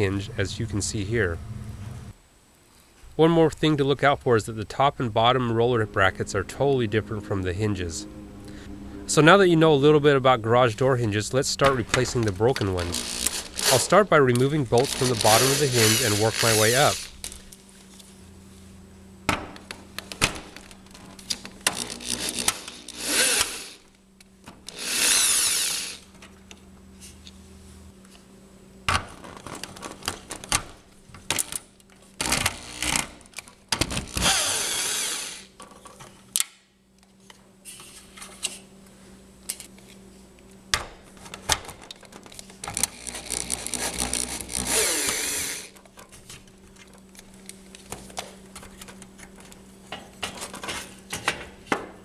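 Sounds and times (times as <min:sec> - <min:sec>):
power drill bursts: 0:11.6 - 0:17.4, 0:21.8 - 0:23.8, 0:24.7 - 0:26.1, 0:34.1 - 0:35.5, 0:42.9 - 0:45.8.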